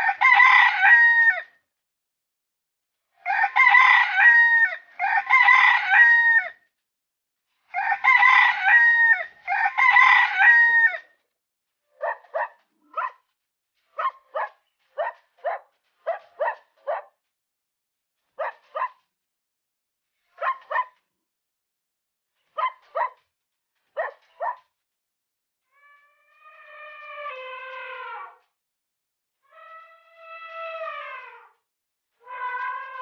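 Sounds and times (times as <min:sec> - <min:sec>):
rooster crowing: 0:00.0 - 0:01.5, 0:03.2 - 0:06.6, 0:07.7 - 0:11.1.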